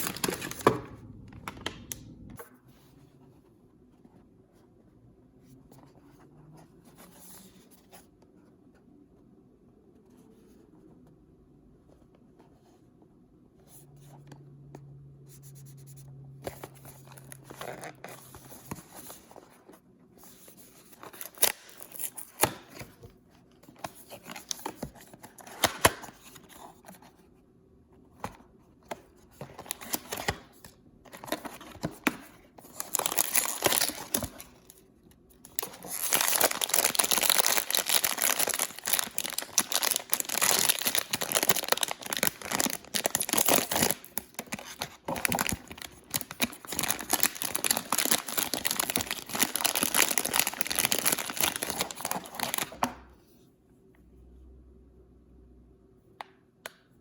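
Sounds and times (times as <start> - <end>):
paper crinkling and tearing: 32.6 - 34.8, 35.4 - 52.9.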